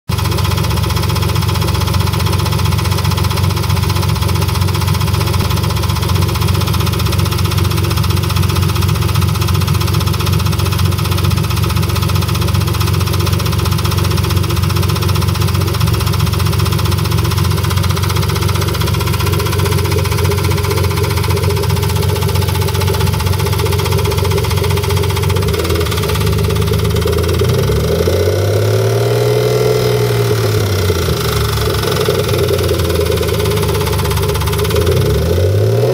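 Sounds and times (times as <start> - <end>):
car engine idling with ticking: 0.1 - 35.9
engine revving: 17.8 - 35.9.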